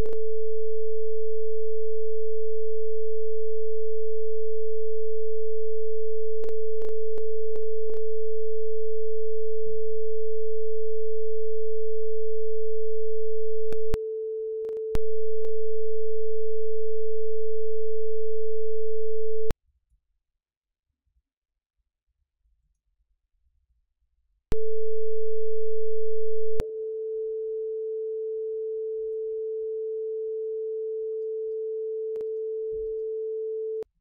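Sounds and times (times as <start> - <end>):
synthesizer sine tone: 0.0 - 14.0, 14.9 - 19.5, 24.5 - 26.6.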